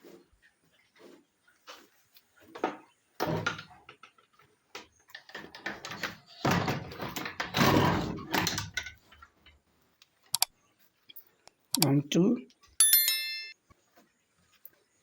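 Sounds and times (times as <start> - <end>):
door scraping and rattling: 5.8 - 8.9.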